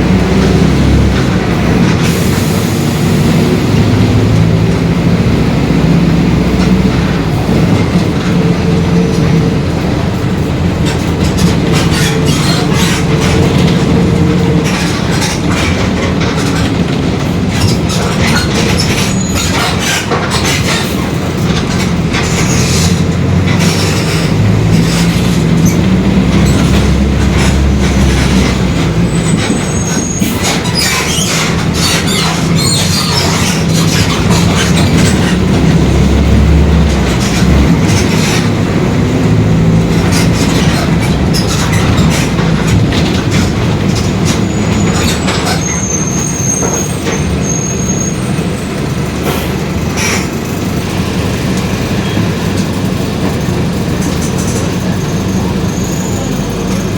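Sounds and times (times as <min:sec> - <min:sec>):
bus diesel engine running: 0:00.0 - 0:56.9
body rattling and knocking: 0:03.4 - 0:55.5
short high squeaks: 0:29.2 - 0:35.4, 0:44.2 - 0:48.8.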